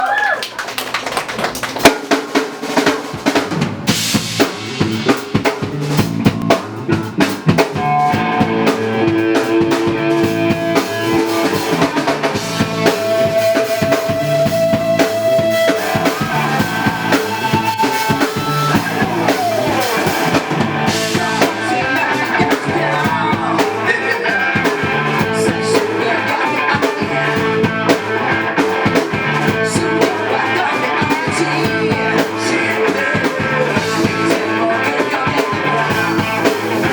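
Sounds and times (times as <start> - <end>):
rock band playing: 1.7 - 36.9
drum kit hits: 1.8 - 25.8.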